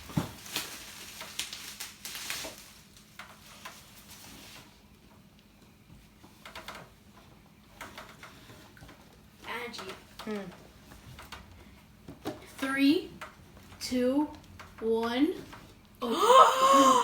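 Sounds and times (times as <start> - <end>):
packaging rustling and clicking: 0.0 - 4.2.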